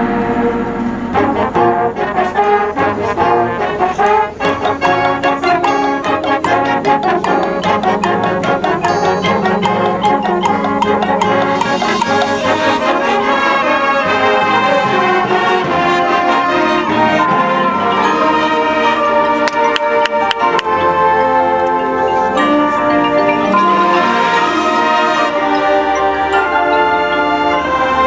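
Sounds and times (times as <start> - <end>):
marching band percussion: 0.0 - 26.7
brass sustaining chords: 0.0 - 28.0
sharp percussion strokes: 3.8 - 20.8, 22.4 - 26.2.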